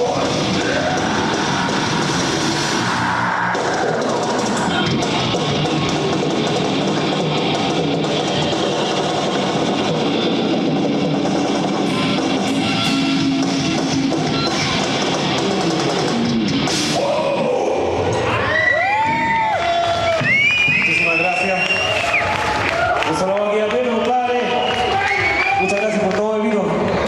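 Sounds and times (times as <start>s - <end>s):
drum kit: 0.0s - 18.3s
distorted electric guitars: 0.0s - 20.8s.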